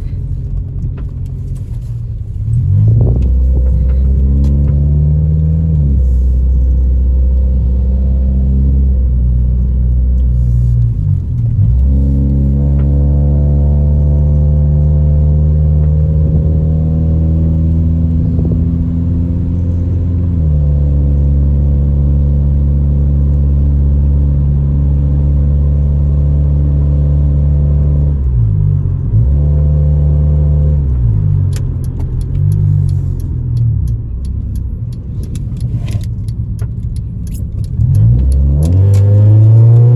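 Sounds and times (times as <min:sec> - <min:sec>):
car engine from inside: 0:00.0 - 0:39.9
light clicks and rattles: 0:31.4 - 0:39.9.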